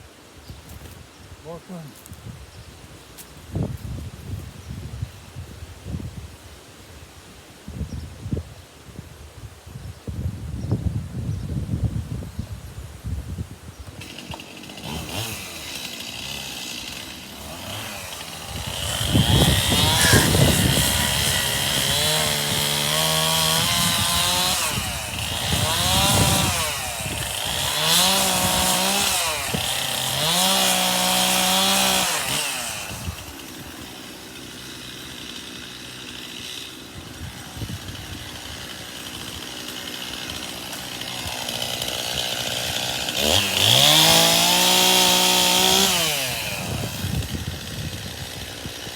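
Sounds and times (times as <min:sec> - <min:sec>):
chainsaw revving and cutting wood: 0:13.8 - 0:48.9.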